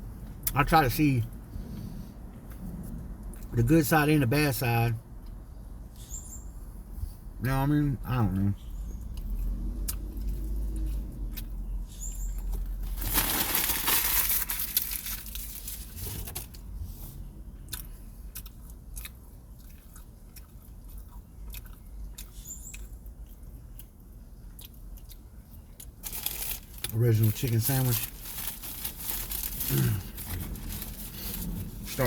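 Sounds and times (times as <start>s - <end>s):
chewing and crunching food: 8.8s - 32.0s
loud rustle: 12.8s - 16.4s.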